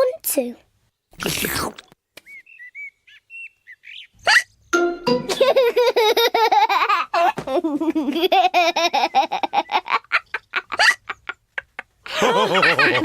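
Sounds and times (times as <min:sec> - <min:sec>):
cartoon hiccup: 0:04.2 - 0:04.5
cartoon characters laughing: 0:05.2 - 0:13.0.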